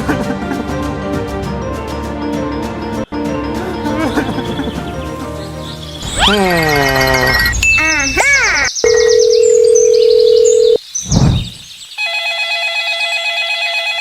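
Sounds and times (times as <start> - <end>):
telephone dial tone: 8.9 - 10.8
telephone ringing tone: 8.9 - 10.8, 12.0 - 14.0.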